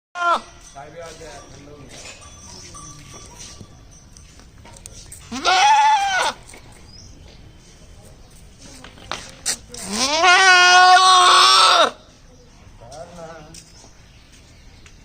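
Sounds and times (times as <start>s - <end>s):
goat bleating: 5.3s - 6.5s, 9.8s - 12.0s.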